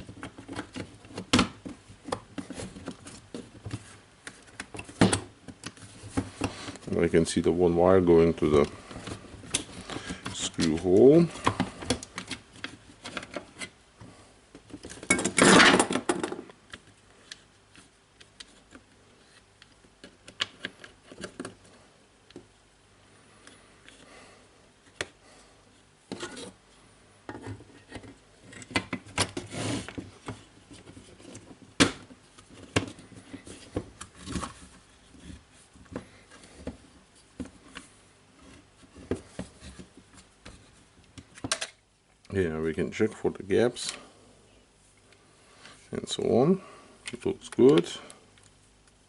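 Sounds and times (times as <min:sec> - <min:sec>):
plastic rubbing scrape: 0:29.4 - 0:31.5
plastic parts clicking and tapping: 0:39.1 - 0:41.8.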